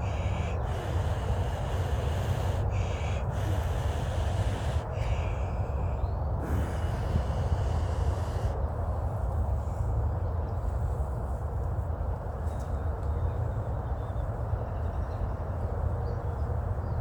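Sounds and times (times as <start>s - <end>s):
person blowing long breaths: 0.0s - 5.6s, 6.4s - 8.6s.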